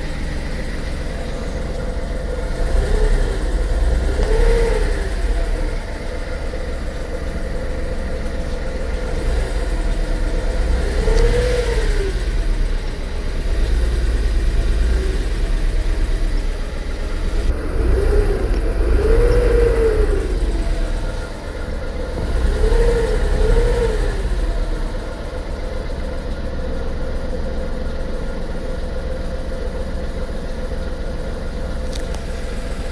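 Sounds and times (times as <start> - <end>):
car engine revving: 0.0 - 25.3.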